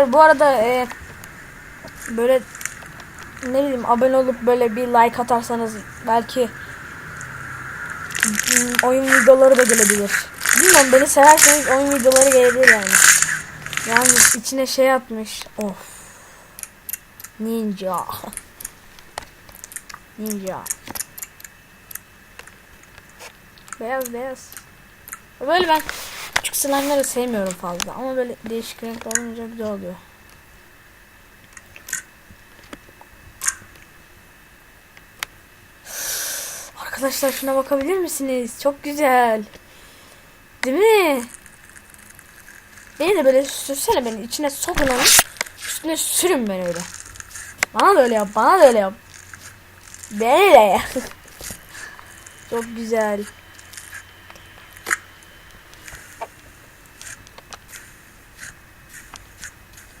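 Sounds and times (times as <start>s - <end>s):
slime crackling and popping: 8.1s - 14.4s.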